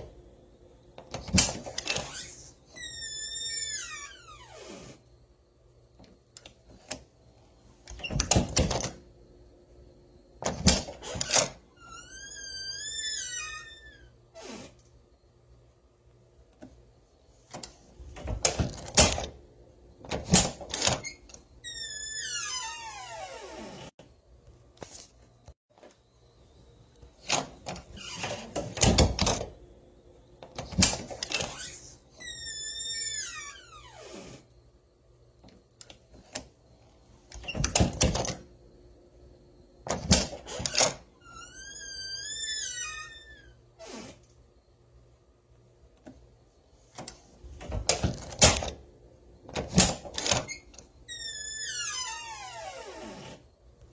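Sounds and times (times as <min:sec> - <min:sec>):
door hinges creaking: 0:01.0 - 0:05.0, 0:07.8 - 0:09.0, 0:10.4 - 0:15.0, 0:17.4 - 0:19.4, 0:20.0 - 0:24.0, 0:27.2 - 0:29.6, 0:30.4 - 0:34.5, 0:37.2 - 0:38.5, 0:39.8 - 0:44.4, 0:46.9 - 0:53.5
door rattling and banging: 0:20.1 - 0:21.2, 0:27.3 - 0:29.5, 0:37.4 - 0:38.4, 0:47.5 - 0:48.8, 0:49.5 - 0:50.6
door latch and handle clatter: 0:37.3 - 0:38.4, 0:47.0 - 0:48.8, 0:49.5 - 0:50.8.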